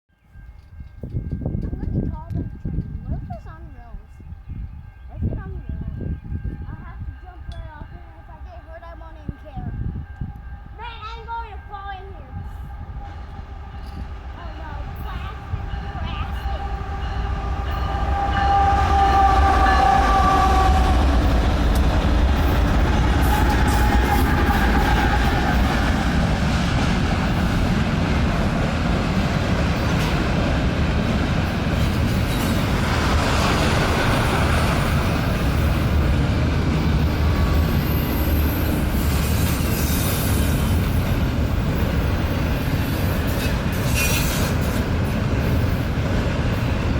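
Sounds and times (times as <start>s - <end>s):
diesel locomotive rumble: 0.4s - 46.9s
train horn blast: 3.8s - 26.2s.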